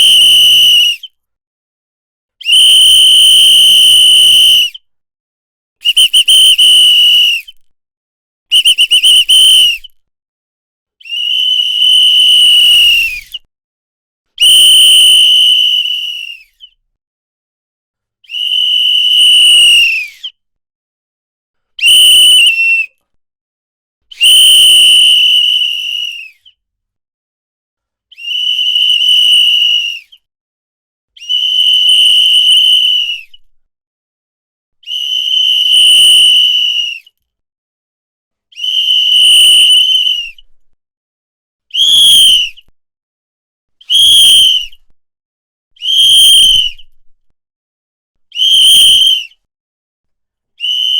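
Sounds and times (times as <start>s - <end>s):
whistle blasts: 2.4s - 4.8s, 5.8s - 7.6s, 8.5s - 9.9s, 11.0s - 13.4s, 14.4s - 16.3s, 18.3s - 20.2s, 21.8s - 23.0s, 24.1s - 26.3s, 31.2s - 33.4s, 34.9s - 37.1s, 38.6s - 40.4s, 41.7s - 42.6s, 43.9s - 44.8s, 45.8s - 46.9s, 48.4s - 49.4s, 50.6s - 50.9s.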